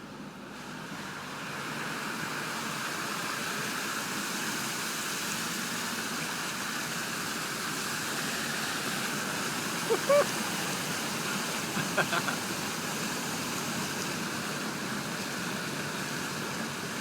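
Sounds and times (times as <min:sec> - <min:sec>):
floodwater rushing: 0:05.6 - 0:17.0.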